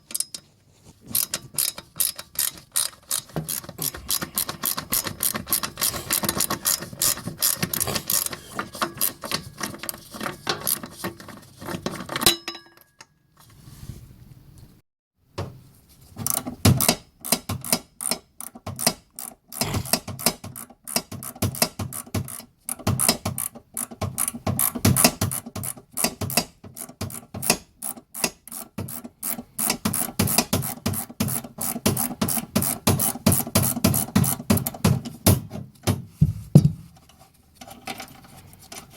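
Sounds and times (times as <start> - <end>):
ratchet spanner clicking: 1.2 - 8.4, 16.3 - 34.7.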